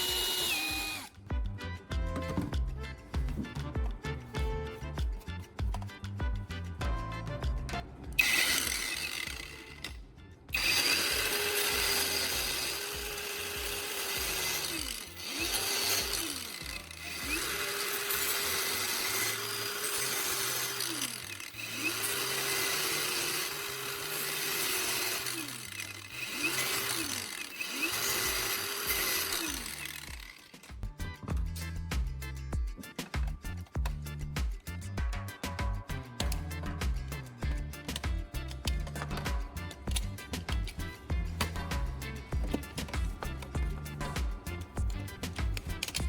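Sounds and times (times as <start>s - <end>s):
power tool motor running: 0.0s - 1.2s, 8.1s - 30.8s, 37.6s - 46.0s.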